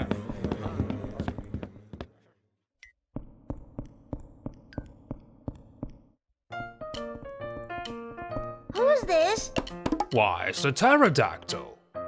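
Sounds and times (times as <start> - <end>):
light piano melody: 6.5 - 9.8
footsteps on hard floor: 6.6 - 9.7.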